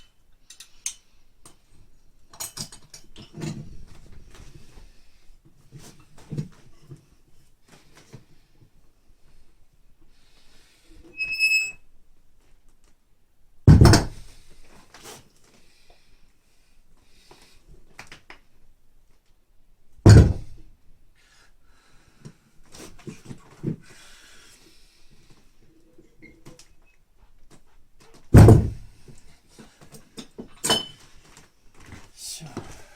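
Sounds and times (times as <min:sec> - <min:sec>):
heavy thud on floor: 0:20.1 - 0:20.5, 0:28.4 - 0:28.8.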